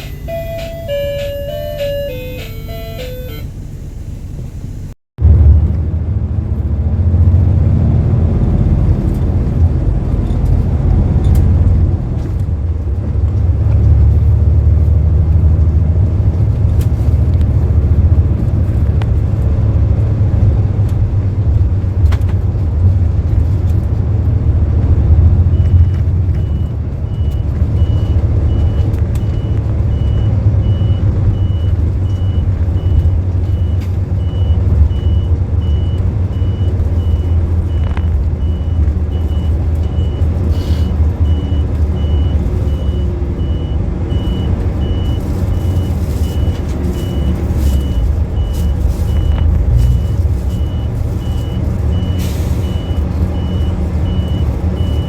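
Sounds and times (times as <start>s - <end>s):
high evenly spaced beeping: 0.0s - 3.6s
bus engine and road rumble: 0.0s - 55.0s.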